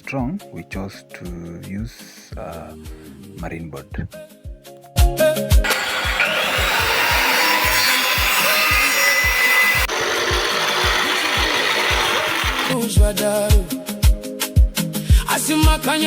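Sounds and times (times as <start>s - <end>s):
power saw cutting plywood: 5.6s - 12.8s.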